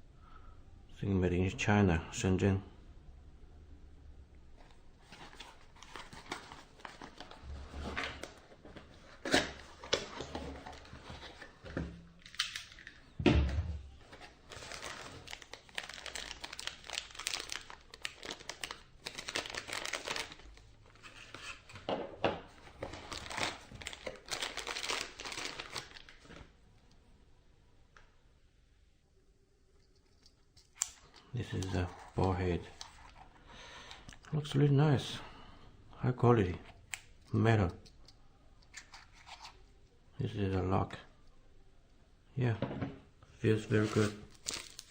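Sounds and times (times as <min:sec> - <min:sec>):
packaging crinkling and tearing: 0:05.0 - 0:13.0, 0:14.0 - 0:21.4, 0:22.6 - 0:26.5, 0:43.7 - 0:44.9.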